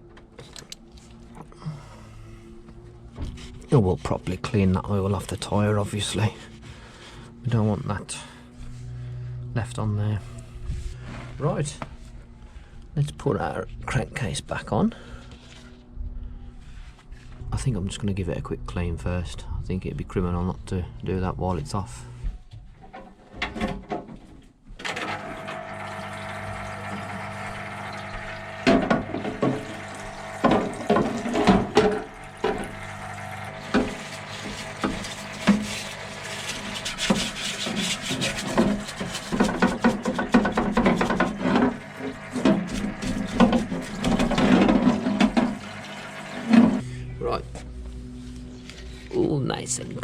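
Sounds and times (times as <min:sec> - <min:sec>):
scrubbing and scraping metal cover: 0:28.7 - 0:32.8, 0:33.4 - 0:46.8.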